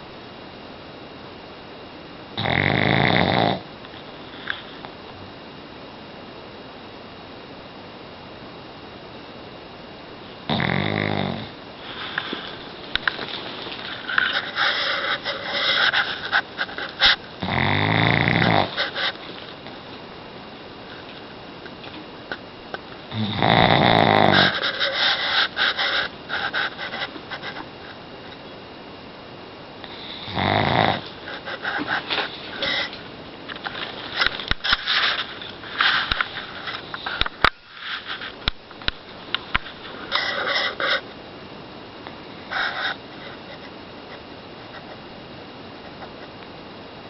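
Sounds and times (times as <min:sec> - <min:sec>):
dog snoring: 0:02.4 - 0:03.7, 0:10.4 - 0:11.6, 0:17.0 - 0:19.2, 0:23.1 - 0:27.1, 0:29.8 - 0:33.0
crackly snuffling breaths: 0:02.4 - 0:05.0, 0:10.5 - 0:19.8, 0:22.3 - 0:28.1, 0:29.8 - 0:38.5, 0:39.3 - 0:41.2, 0:42.1 - 0:45.1.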